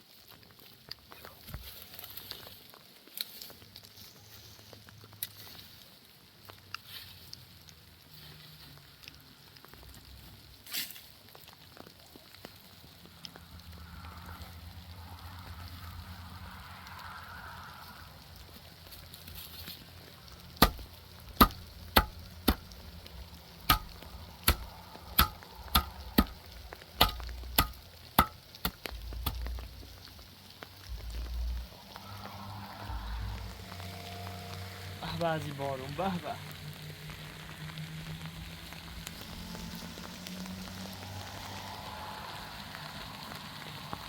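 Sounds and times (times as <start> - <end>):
sharp knocks: 20.6 - 22.7, 23.7 - 29.5
low rumble: 20.6 - 34.4.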